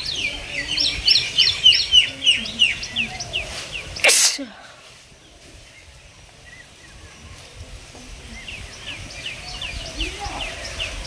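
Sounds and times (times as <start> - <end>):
small birds chirping: 0.0 - 11.0
woman sneezing: 4.0 - 4.6.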